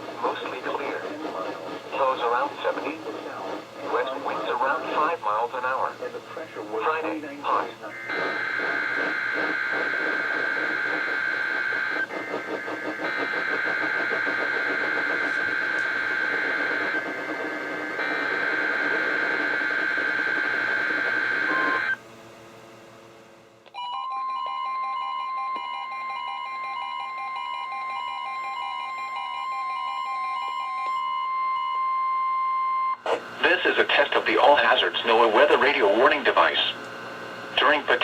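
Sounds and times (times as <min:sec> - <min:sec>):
steady electronic tones: 0:07.6 - 0:22.0.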